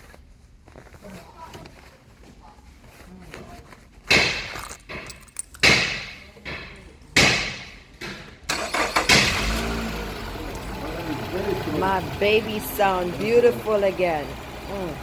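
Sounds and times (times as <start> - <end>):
car engine starting and running: 8.5 - 15.0.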